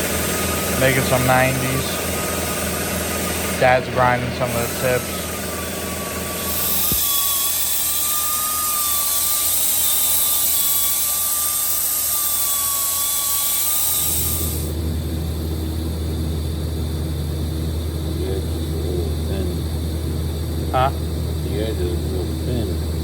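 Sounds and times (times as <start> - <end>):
power grinder on metal: 0.0 - 14.8
steady low hum: 0.0 - 23.0.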